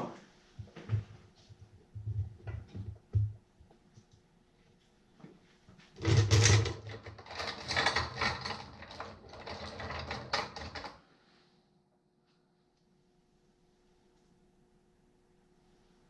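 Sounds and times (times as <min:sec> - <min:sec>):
metal tools clicking and scraping: 0:06.0 - 0:11.0.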